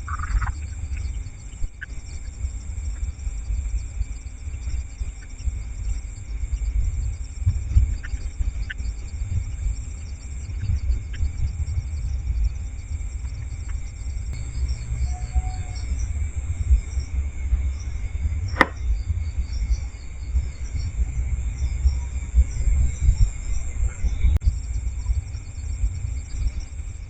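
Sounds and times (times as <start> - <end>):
insects chirping trills: 0.0 - 27.0
low rumble: 0.0 - 27.0
sharp click: 18.6 - 18.8.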